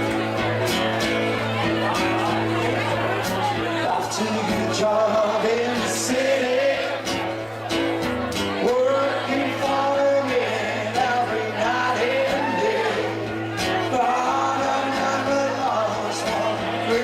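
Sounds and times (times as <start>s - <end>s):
guitar: 0.0s - 17.0s
person singing: 3.8s - 7.2s, 8.4s - 17.0s.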